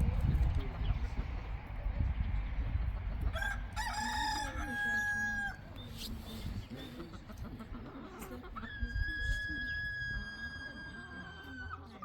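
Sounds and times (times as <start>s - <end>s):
chickens clucking: 0.1s - 12.0s
rooster crowing: 3.4s - 5.6s.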